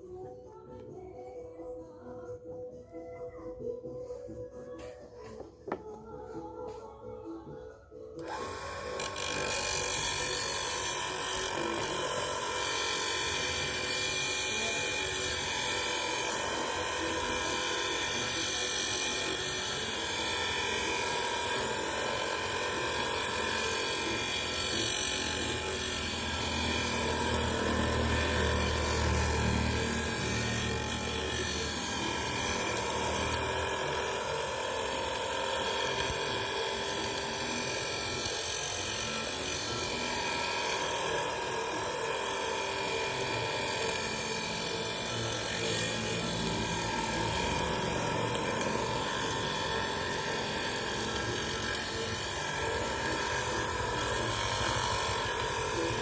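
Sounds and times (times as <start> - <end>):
power tool whining: 3.4 - 56.0.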